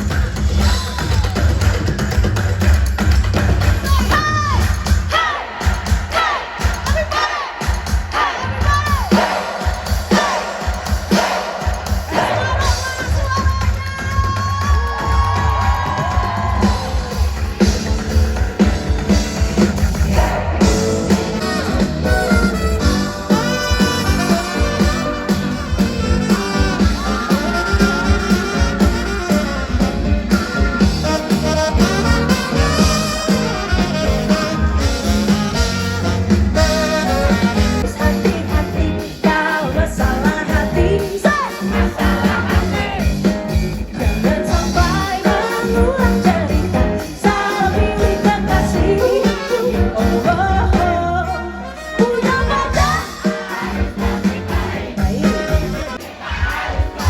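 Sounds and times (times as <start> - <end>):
live band music: 0.0 - 57.0
person singing: 37.8 - 43.1, 44.0 - 55.9.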